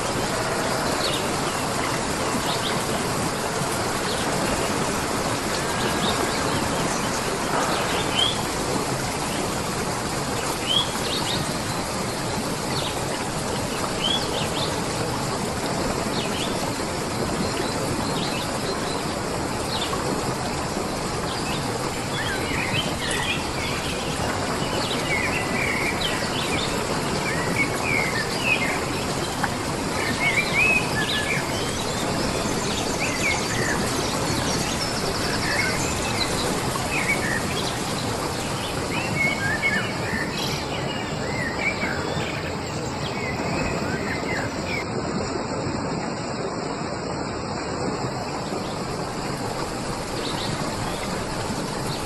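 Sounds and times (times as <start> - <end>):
outdoor noise: 0.0 - 41.6.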